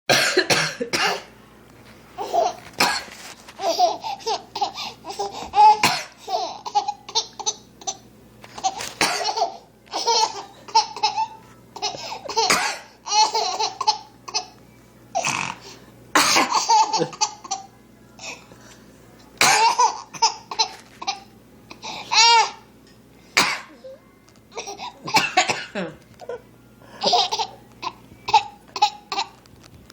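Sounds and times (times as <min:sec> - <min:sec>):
woman coughing: 0:00.1 - 0:01.3, 0:02.8 - 0:03.1, 0:05.8 - 0:06.2, 0:09.0 - 0:09.4, 0:11.8 - 0:13.0, 0:16.2 - 0:18.4, 0:19.4 - 0:21.3, 0:23.4 - 0:23.9, 0:24.5 - 0:26.4
baby giggling: 0:03.6 - 0:08.0, 0:08.6 - 0:12.5, 0:13.1 - 0:14.5, 0:27.0 - 0:29.3.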